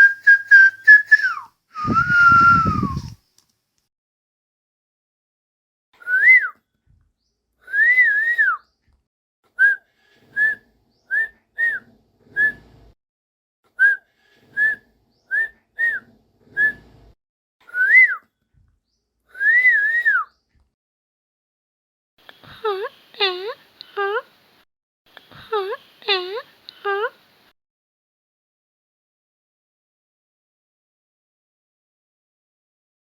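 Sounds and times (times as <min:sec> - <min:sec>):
person whistling a tune: 0:00.0 - 0:03.2, 0:06.0 - 0:06.6, 0:07.7 - 0:08.6, 0:10.4 - 0:11.8, 0:14.6 - 0:16.0, 0:17.7 - 0:18.2, 0:19.4 - 0:20.3.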